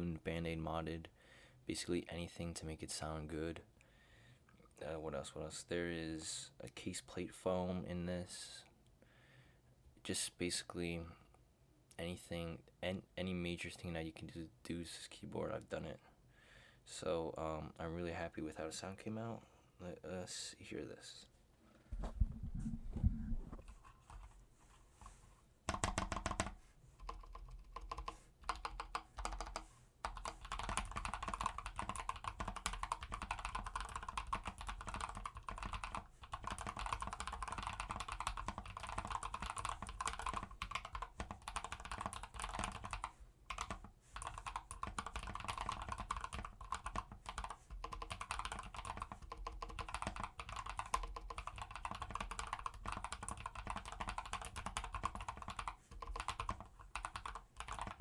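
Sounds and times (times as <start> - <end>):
typing on mechanical keyboard: 23.9 - 24.3, 25.7 - 58.0.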